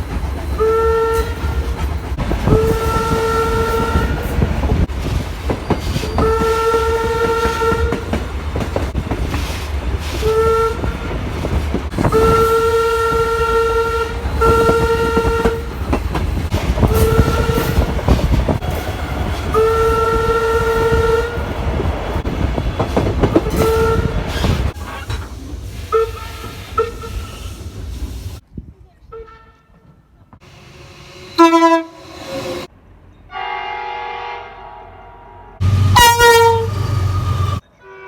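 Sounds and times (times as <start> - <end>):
train rumble and wheel clatter: 0.0 - 33.7, 35.6 - 38.0
locomotive horn blasts: 0.6 - 1.6, 2.4 - 4.5, 6.2 - 8.2, 10.2 - 11.0, 12.0 - 15.8, 16.8 - 17.9, 18.7 - 21.5, 23.5 - 24.7, 31.3 - 32.7, 33.3 - 38.0.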